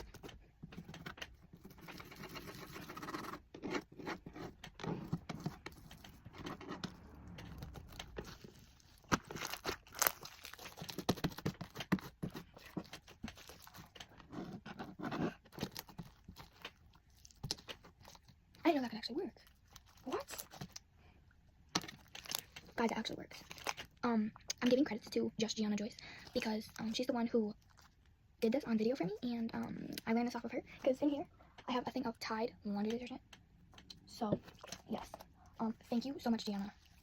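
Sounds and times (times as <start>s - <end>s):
slime being worked by hand: 0.0s - 18.7s
sticky clicks and crackles: 0.0s - 20.8s, 21.7s - 25.0s.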